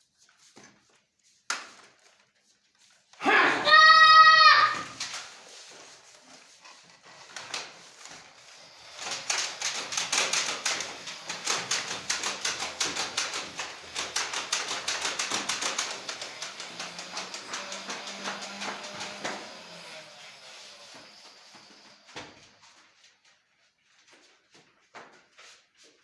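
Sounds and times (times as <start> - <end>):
fast sharp clicks: 8.8 - 19.5.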